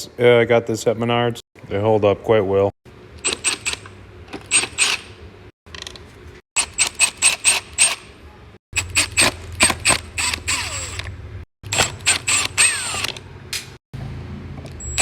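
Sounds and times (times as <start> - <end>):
screwdriver ratcheting clicks: 3.2 - 5.1, 8.8 - 11.1, 11.7 - 13.7.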